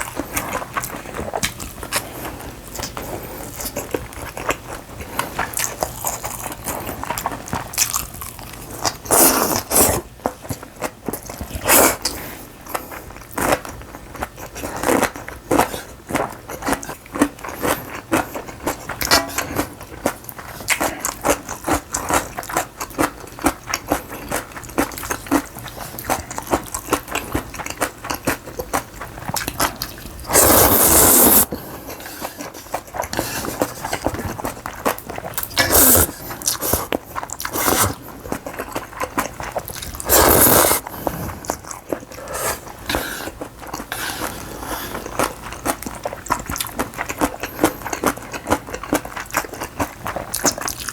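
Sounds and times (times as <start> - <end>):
person chewing and crunching: 0.0 - 50.9
loud slurping of noodles: 30.3 - 31.5, 35.5 - 36.9, 37.5 - 38.0, 40.0 - 41.4.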